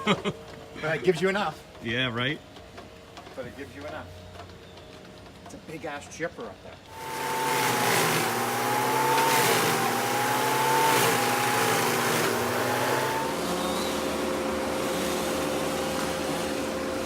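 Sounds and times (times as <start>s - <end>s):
large engine with whine: 6.9s - 17.0s.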